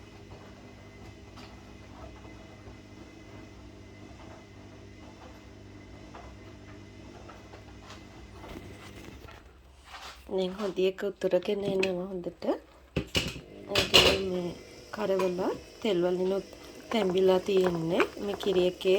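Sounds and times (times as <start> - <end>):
curry bubbling with popping ticks: 14.9 - 18.9.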